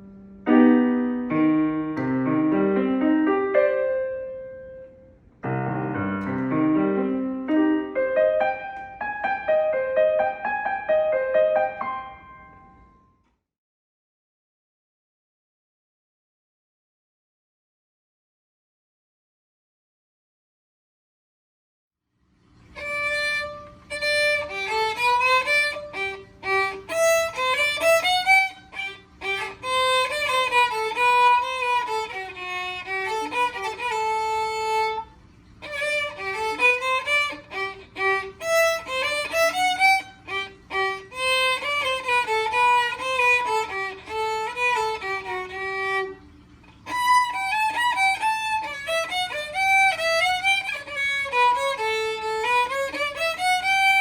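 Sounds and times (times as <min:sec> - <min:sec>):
solo violin melody: 0:22.7 - 0:54.0.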